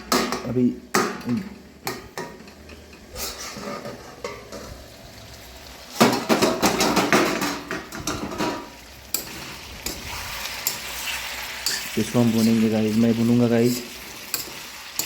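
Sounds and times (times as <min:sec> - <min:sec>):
metal cookware clattering: 0:00.0 - 0:04.8, 0:05.9 - 0:15.0
spoon scraping a pot: 0:03.0 - 0:04.7, 0:08.0 - 0:15.0.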